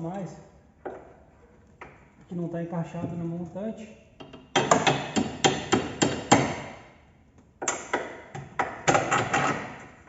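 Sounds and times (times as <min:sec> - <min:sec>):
hammer strikes on metal: 0:04.5 - 0:06.7.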